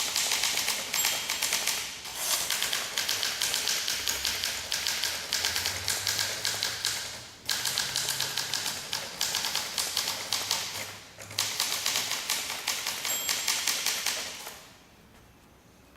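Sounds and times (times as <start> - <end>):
typewriter keystroke clacks: 0.0 - 1.8, 2.4 - 14.6
typewriter bell ringing: 0.1 - 1.8, 11.4 - 14.6.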